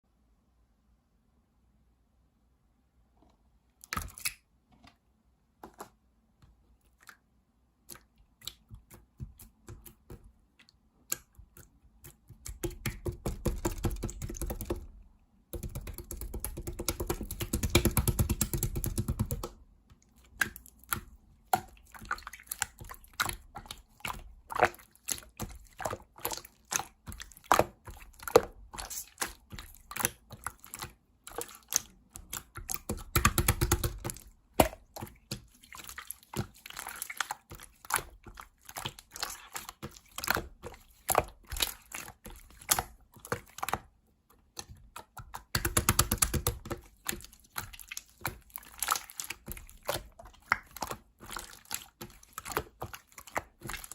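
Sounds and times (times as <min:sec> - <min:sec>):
slime clicking and popping: 0:31.6 - 0:35.4.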